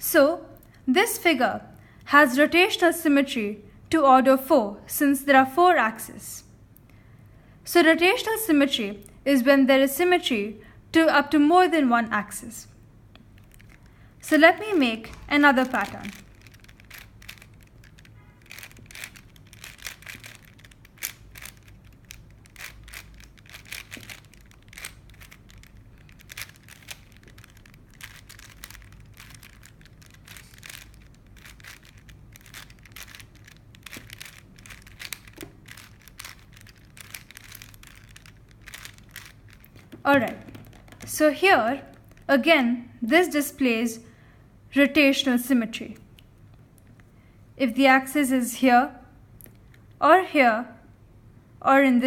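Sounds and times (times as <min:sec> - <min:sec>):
puzzle cube plastic clicks: 0:13.1 - 0:41.2, 0:41.8 - 0:42.3.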